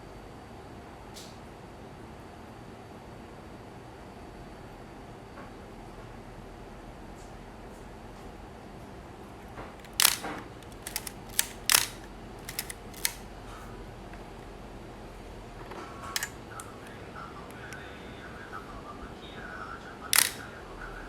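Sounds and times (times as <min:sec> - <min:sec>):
camera shutter clicks: 0:09.8 - 0:13.2, 0:16.2 - 0:16.4, 0:20.2 - 0:20.4
film advance lever winding: 0:09.8 - 0:13.2, 0:16.2 - 0:16.4, 0:20.2 - 0:20.4.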